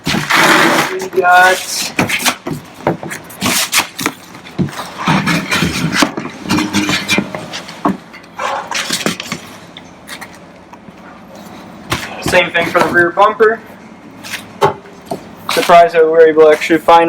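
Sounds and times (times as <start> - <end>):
knocks and scrapes: 0.0 - 10.4.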